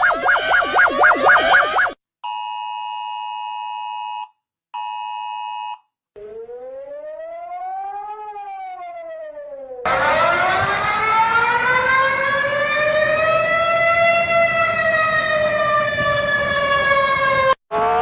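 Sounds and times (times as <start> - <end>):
warning siren wailing: 0.0 - 2.0, 6.2 - 18.0.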